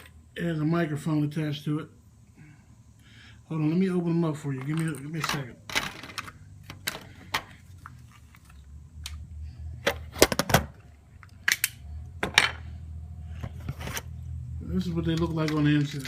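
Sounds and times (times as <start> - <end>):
low steady hum: 0.0 - 16.0
plastic housing clicks and snaps: 11.2 - 11.8.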